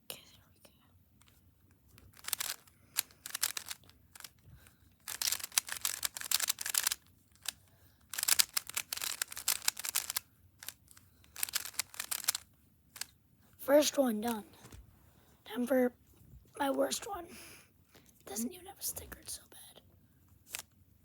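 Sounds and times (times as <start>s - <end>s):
puzzle cube clicking and scraping: 1.2s - 14.6s, 20.5s - 20.7s.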